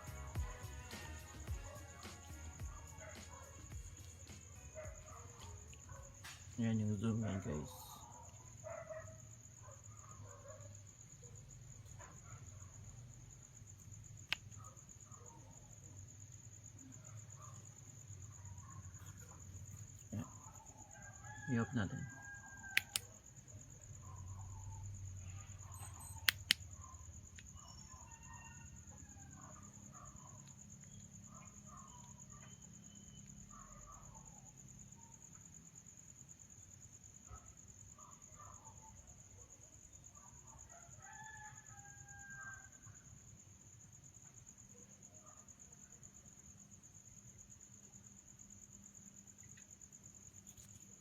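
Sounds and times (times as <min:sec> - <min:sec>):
high insect trill: 0:00.0 - 0:51.0
rooster crowing: 0:20.2 - 0:23.1, 0:27.8 - 0:29.7, 0:40.7 - 0:42.9
sharp clicks: 0:22.8 - 0:23.1, 0:26.1 - 0:26.6.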